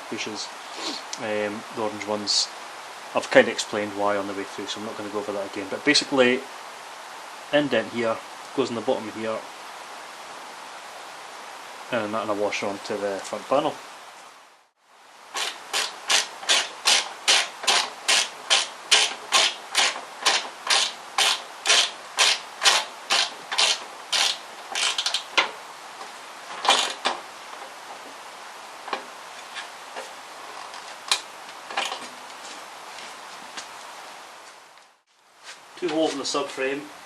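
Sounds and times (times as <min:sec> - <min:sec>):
socket ratchet clicking: 0:15.4 - 0:25.3.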